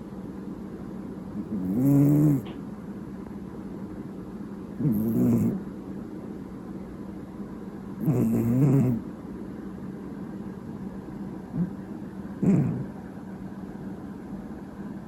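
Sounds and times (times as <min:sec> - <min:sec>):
cat snoring loudly: 0:01.4 - 0:02.5, 0:04.8 - 0:05.6, 0:08.0 - 0:09.0, 0:11.6 - 0:11.8, 0:12.4 - 0:13.0.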